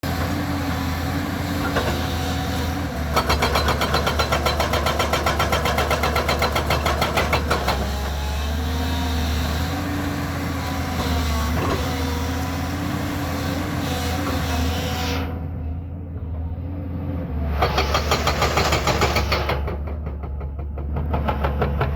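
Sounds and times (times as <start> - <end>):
excavator diesel engine running: 0.0 - 21.9
hydraulic rock breaker hammering: 1.4 - 8.5, 17.6 - 21.9.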